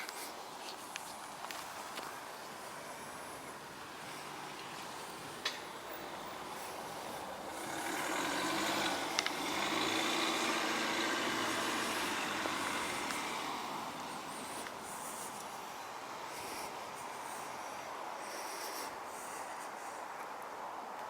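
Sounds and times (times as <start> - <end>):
vehicle passing by: 3.9 - 15.3.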